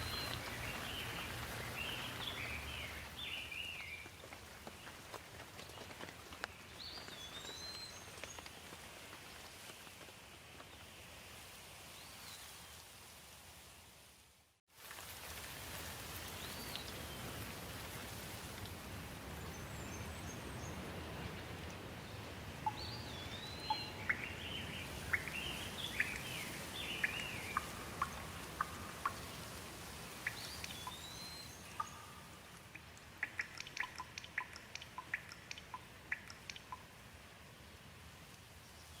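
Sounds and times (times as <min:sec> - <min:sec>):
water dripping: 0:00.0 - 0:04.1, 0:22.6 - 0:37.0
steady rain: 0:00.0 - 0:39.0.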